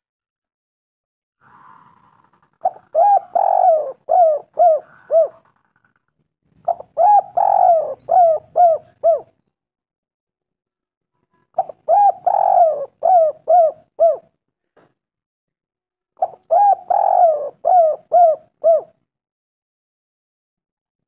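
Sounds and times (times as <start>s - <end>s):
dove cooing: 1.4s - 5.6s, 6.6s - 9.4s, 11.6s - 14.3s, 16.2s - 19.0s.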